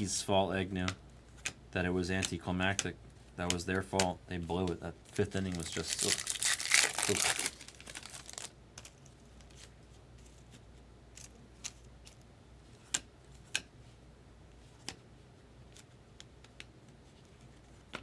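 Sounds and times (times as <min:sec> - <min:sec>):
trading cards clicking and snapping: 0:02.2 - 0:04.8.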